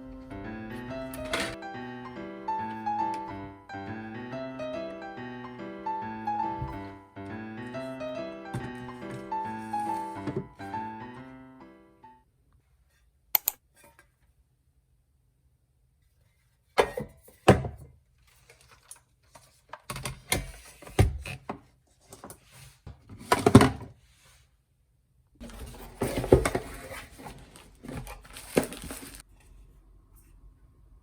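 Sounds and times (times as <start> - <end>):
objects knocking and clattering: 16.8 - 17.9, 25.4 - 29.3
rustling: 25.4 - 29.7.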